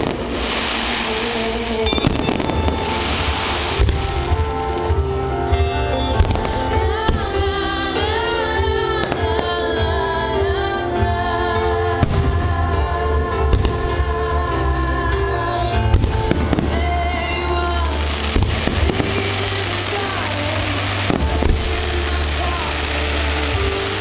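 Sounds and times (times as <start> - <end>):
fireworks bangs: 0.0 - 7.6, 15.8 - 24.0
song over loudspeakers: 0.0 - 24.0.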